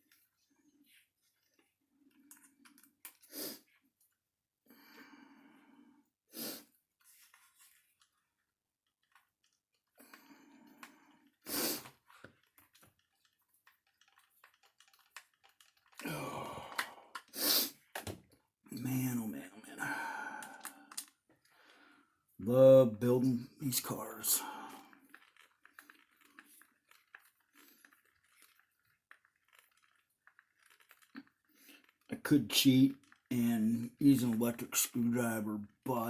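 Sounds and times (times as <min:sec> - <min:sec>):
parts and tools clicking: 0:11.8 - 0:18.2.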